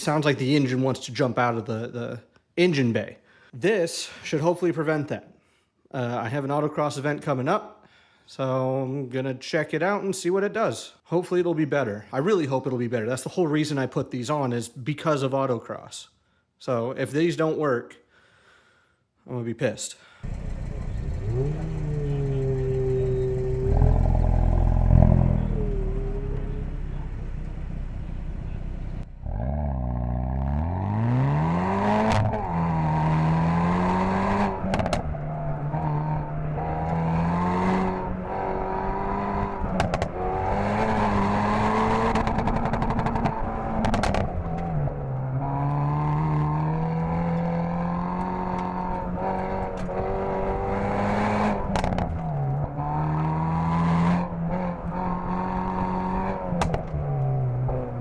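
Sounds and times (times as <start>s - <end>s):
car engine revving: 20.2s - 58.0s
sharp clicks and knocks: 39.8s - 40.2s, 42.1s - 44.7s, 56.6s - 57.0s.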